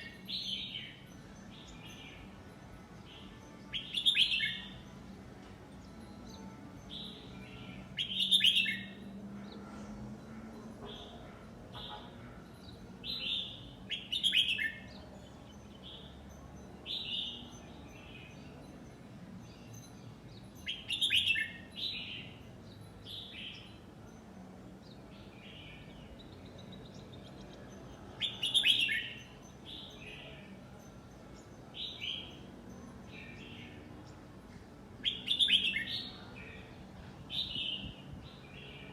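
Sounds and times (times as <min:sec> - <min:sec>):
bird singing warbled phrases: 0:08.0 - 0:09.0, 0:20.6 - 0:23.8, 0:24.9 - 0:30.4, 0:35.0 - 0:38.9.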